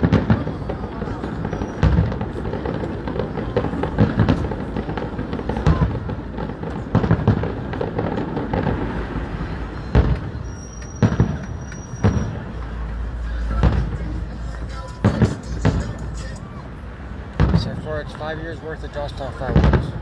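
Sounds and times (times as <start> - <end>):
rumble of firework bursts: 0.0 - 18.2, 18.9 - 20.0
fireworks booming: 0.0 - 20.0.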